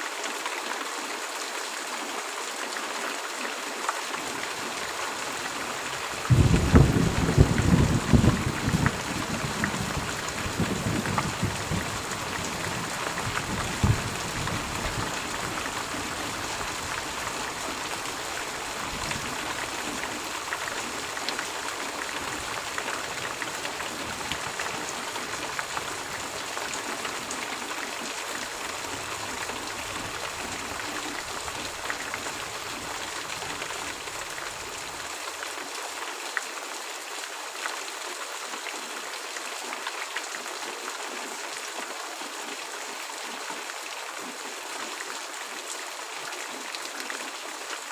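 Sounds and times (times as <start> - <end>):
heavy rain: 0.0 - 47.9
low thunder rumble: 6.3 - 16.9.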